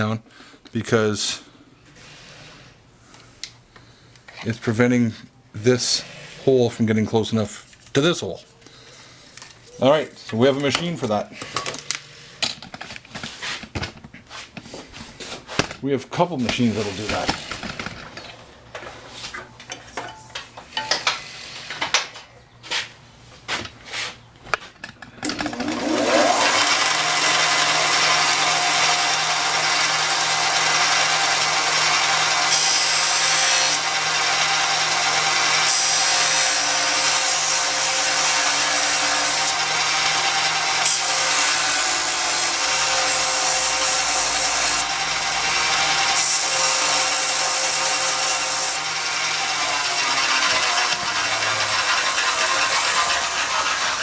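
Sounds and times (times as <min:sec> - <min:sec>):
power grinder whining: 0:25.2 - 0:54.0.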